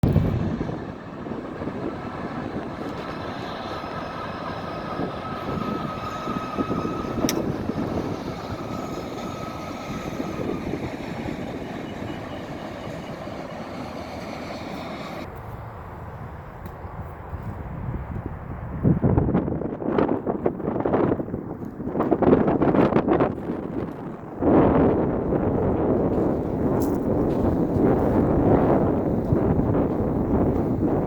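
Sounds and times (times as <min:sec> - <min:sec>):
train rumbling past: 0:00.0 - 0:16.5, 0:20.6 - 0:31.0
high wheel squeal: 0:00.6 - 0:15.3
sharp click: 0:07.2 - 0:07.5.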